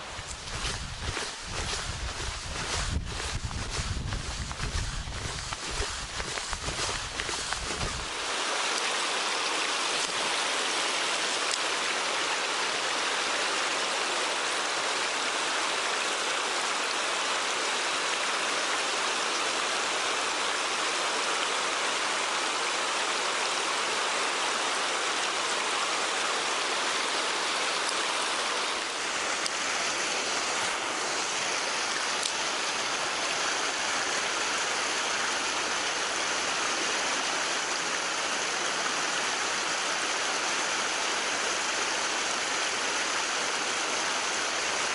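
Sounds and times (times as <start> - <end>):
low bumps: 0.0 - 8.1
water rushing over rocks: 0.0 - 44.9.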